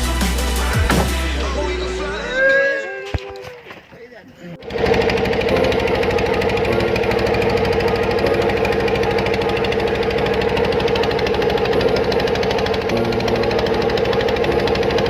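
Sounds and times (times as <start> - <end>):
small boat engine running: 4.6 - 15.0.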